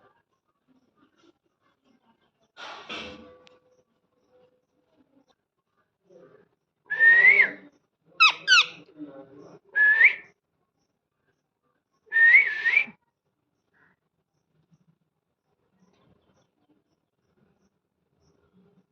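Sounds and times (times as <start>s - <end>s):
parrot whistling: 8.2s - 8.8s.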